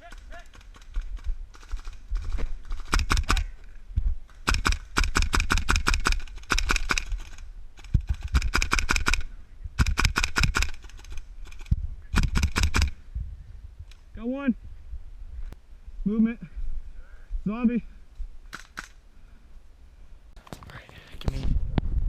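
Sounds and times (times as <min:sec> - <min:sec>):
airsoft rifle firing bursts: 0:01.5 - 0:03.4, 0:04.4 - 0:07.4, 0:08.1 - 0:09.2, 0:09.8 - 0:11.6.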